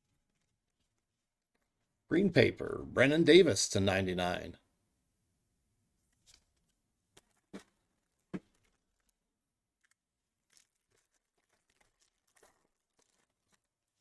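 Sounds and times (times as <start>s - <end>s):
foil wrapper crinkle: 0.0s - 1.9s, 6.2s - 14.0s.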